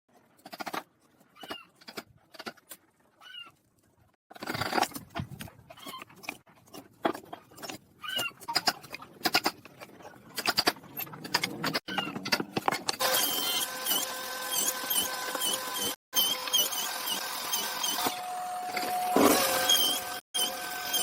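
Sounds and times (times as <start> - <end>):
short squeaks: 11.7 - 21.0.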